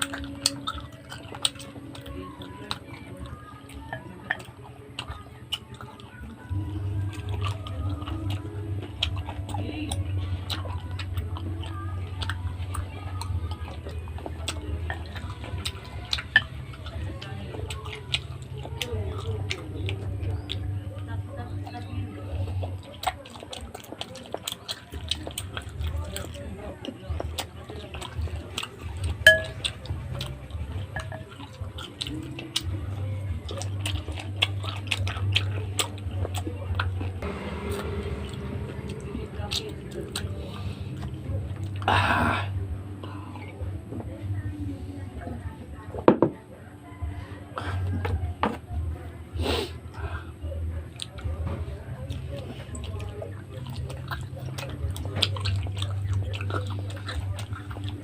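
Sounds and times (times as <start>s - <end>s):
chewing seafood: 0.0s - 58.0s
cutlery and dishes clinking: 29.2s - 29.7s
steady low hum: 32.7s - 47.5s.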